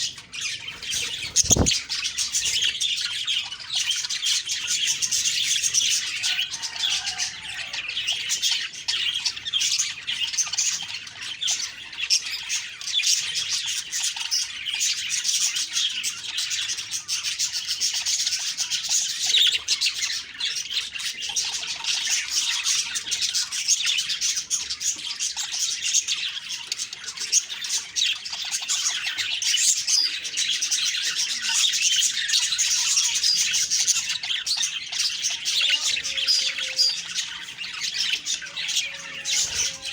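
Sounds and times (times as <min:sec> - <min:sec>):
budgies chattering and chirping: 0:00.0 - 0:39.9
budgie squawks: 0:00.7 - 0:01.8.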